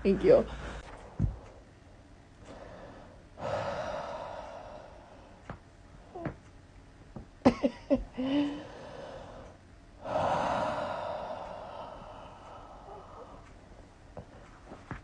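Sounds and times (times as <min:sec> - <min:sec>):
long breath out: 0:08.2 - 0:13.5
person gasping: 0:08.2 - 0:13.5.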